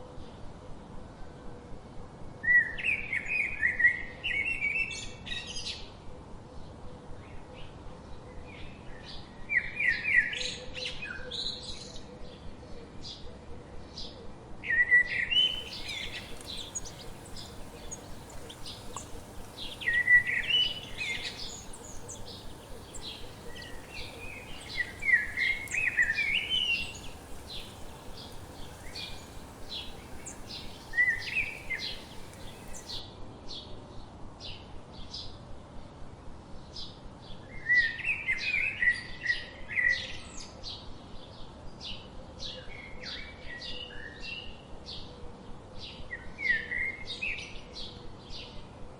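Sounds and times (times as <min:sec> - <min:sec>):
high bird chirps: 0:15.5 - 0:33.0.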